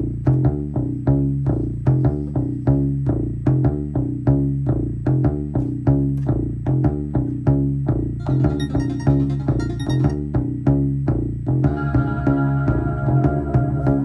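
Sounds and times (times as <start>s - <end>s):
synthesizer bass sequence: 0.8s - 10.9s, 11.6s - 14.0s.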